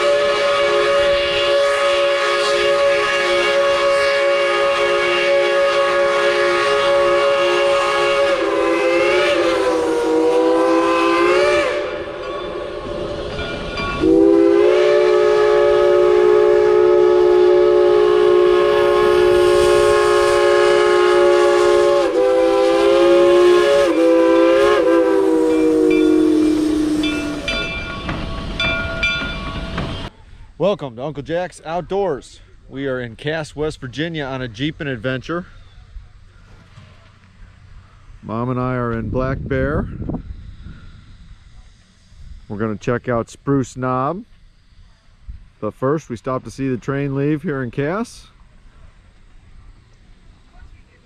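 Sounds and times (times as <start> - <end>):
steam locomotive chime whistle: 0.0 - 30.1.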